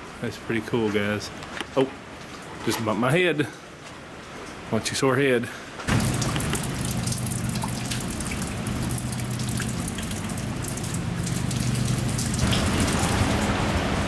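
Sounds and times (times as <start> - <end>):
heavy rain falling: 5.9 - 14.0
low hum: 5.9 - 14.0.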